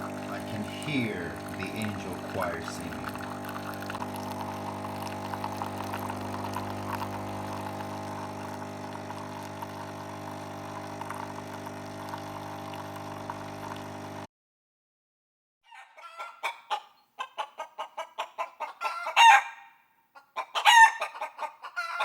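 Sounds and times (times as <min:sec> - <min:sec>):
coffee machine pump humming: 0:00.0 - 0:14.3.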